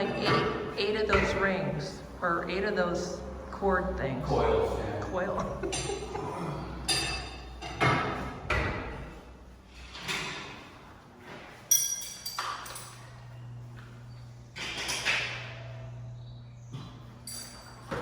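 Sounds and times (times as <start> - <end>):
metal hardware knocking and clinking: 11.7 - 13.0.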